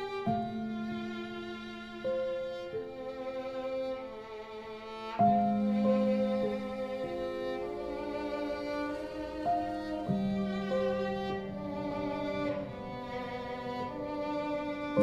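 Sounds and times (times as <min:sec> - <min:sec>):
bowed strings holding long notes: 0:00.0 - 0:15.0.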